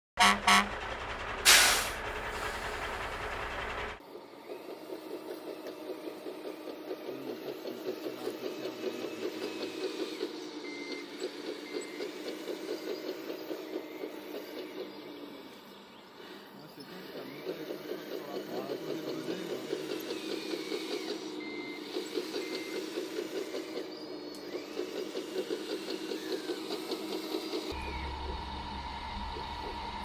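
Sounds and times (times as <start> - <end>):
pulsing diesel engine sound: 0.2 - 30.0
air brake hiss: 1.4 - 3.9.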